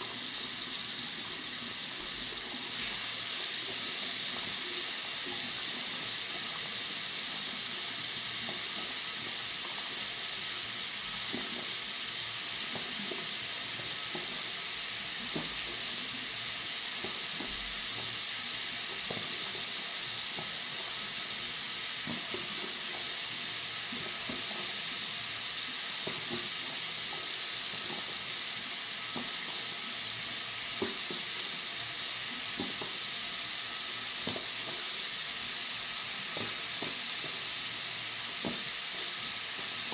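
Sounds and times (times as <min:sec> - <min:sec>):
water running from sink tap: 0:00.0 - 0:39.9.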